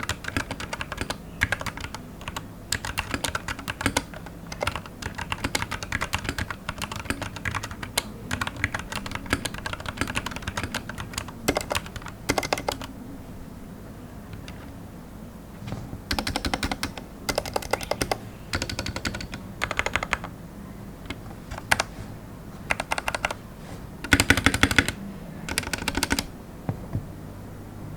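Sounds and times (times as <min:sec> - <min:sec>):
mechanical keyboard typing: 0:00.0 - 0:12.9, 0:14.3 - 0:14.7, 0:16.1 - 0:20.3, 0:21.1 - 0:21.9, 0:22.7 - 0:23.4, 0:24.0 - 0:26.3.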